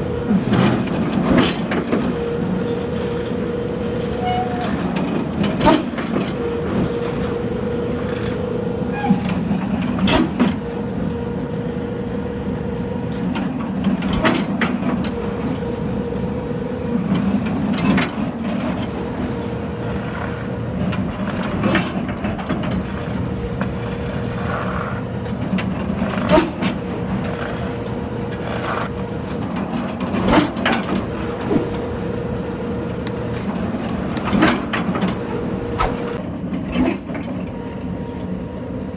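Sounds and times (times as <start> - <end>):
piling machine motor hum: 31.0 - 36.4.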